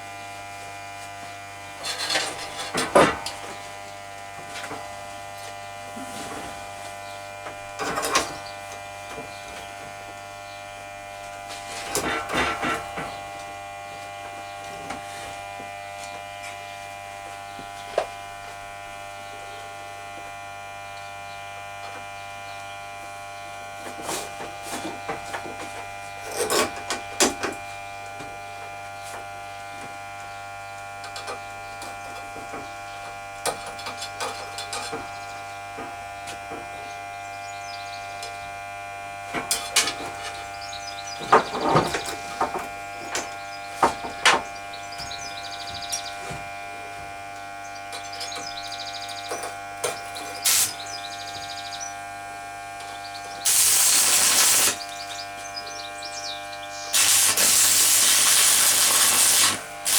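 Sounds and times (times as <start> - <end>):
steady hum: 32.6 - 59.9
loud hiss: 50.4 - 50.8, 53.4 - 54.9, 56.9 - 59.9.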